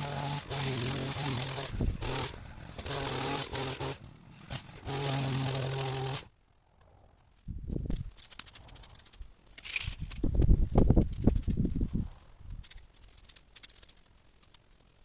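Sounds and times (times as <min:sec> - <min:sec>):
power trimmer motor: 0:00.0 - 0:06.3
rustling and scraping of cuttings: 0:00.0 - 0:06.3, 0:07.1 - 0:15.0.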